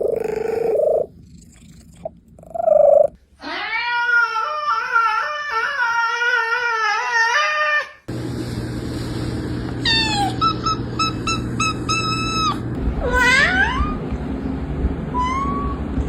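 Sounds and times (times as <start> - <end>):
cat yowling: 0.0 - 1.1, 2.6 - 8.0, 9.8 - 14.0.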